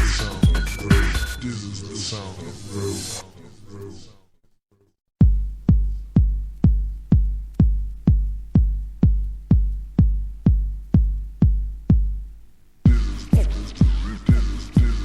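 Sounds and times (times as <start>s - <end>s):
drum machine kick drum: 0.0s - 1.4s, 5.2s - 15.0s
techno track: 0.0s - 2.5s, 5.2s - 12.3s, 12.9s - 15.0s.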